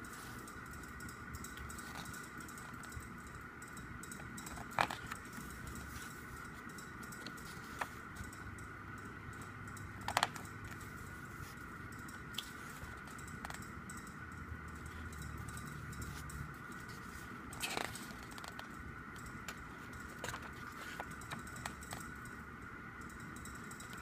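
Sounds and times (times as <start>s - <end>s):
faint steady hum: 0.0s - 24.0s
pages clicking: 4.5s - 8.3s, 16.8s - 18.7s, 19.4s - 22.0s.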